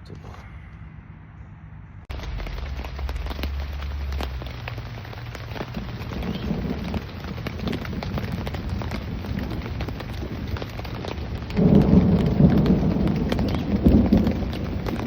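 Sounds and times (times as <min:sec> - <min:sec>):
loud low rumble: 0:00.5 - 0:15.0
rain pattering on tent fabric: 0:02.1 - 0:15.0.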